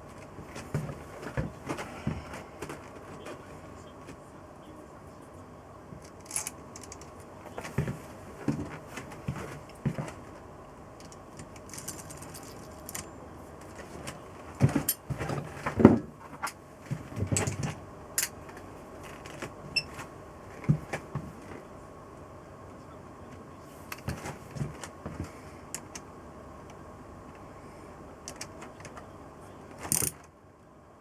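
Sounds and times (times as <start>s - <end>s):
tools and metal parts clinking: 11.0s - 14.0s, 29.8s - 30.3s.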